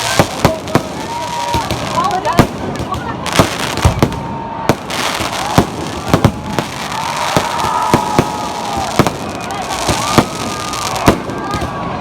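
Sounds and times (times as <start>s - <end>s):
fireworks bangs and pops: 0.0s - 12.0s.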